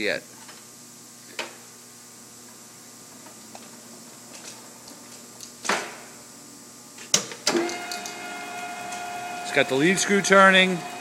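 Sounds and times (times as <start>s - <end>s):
lathe humming: 7.5s - 11.0s.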